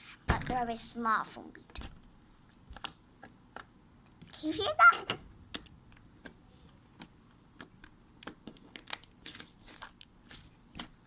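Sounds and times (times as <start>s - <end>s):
slime squeezed crackling: 7.0s - 11.0s.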